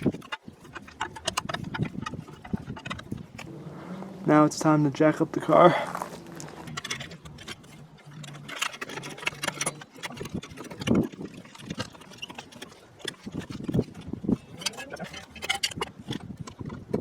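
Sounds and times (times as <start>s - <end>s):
low steady hum: 0.0s - 15.7s.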